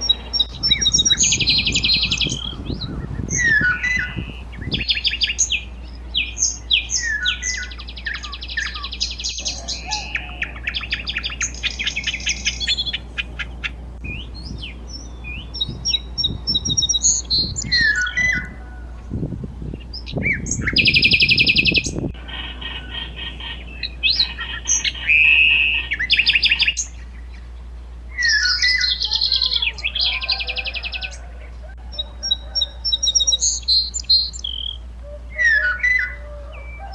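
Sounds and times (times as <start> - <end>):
wild birds chirping and trilling: 0.0 - 36.9.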